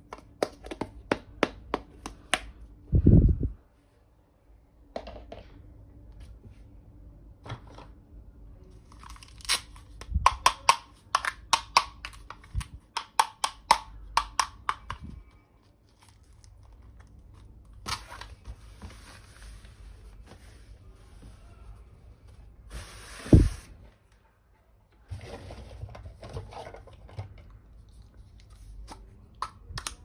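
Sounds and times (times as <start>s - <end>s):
packaging ripping: 8.9s - 10.0s.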